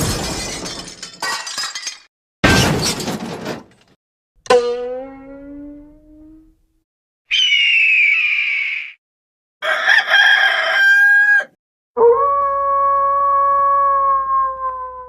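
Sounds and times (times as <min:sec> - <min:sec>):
long held cartoon call: 0:07.3 - 0:09.0
rooster crowing: 0:09.6 - 0:11.6.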